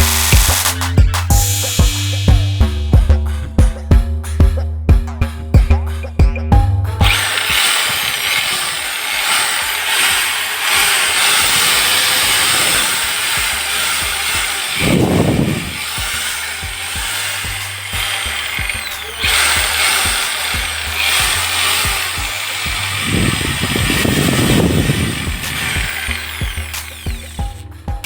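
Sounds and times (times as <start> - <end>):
small electric motor running: 0.0 - 1.8, 7.0 - 27.6.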